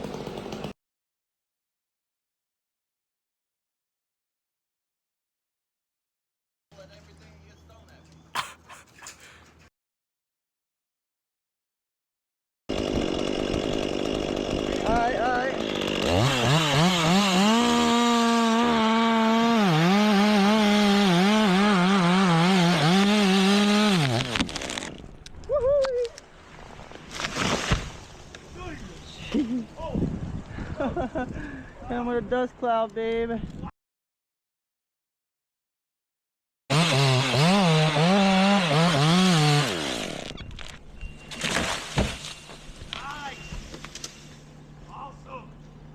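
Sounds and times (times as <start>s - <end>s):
chainsaw cutting wood: 0.0s - 0.8s, 12.7s - 25.1s, 36.7s - 42.9s.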